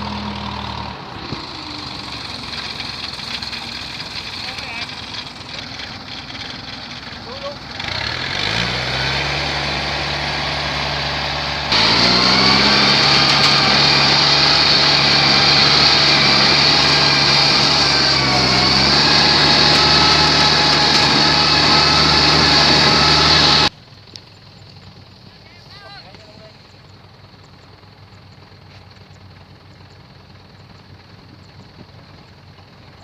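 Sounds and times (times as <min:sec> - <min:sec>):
diesel engine revving: 0:00.0 - 0:23.8.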